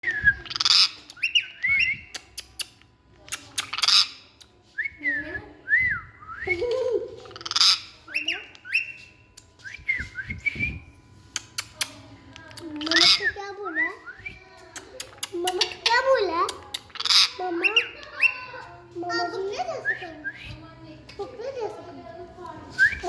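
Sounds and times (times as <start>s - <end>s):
parrot squawking: 0.4s - 1.5s, 7.3s - 8.9s, 12.8s - 13.4s, 16.9s - 18.5s.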